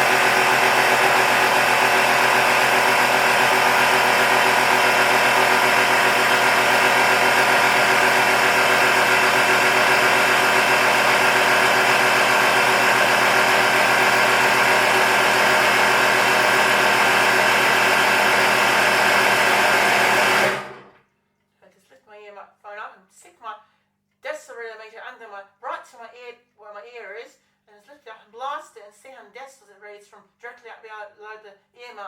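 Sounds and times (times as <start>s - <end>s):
electric air compressor running: 0.0s - 21.0s.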